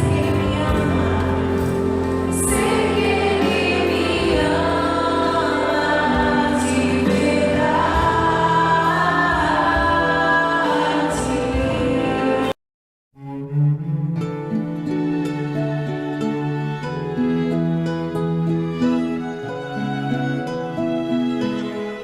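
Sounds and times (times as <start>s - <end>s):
accompanying music: 0.0s - 12.5s
choir singing a slow hymn: 0.0s - 12.5s.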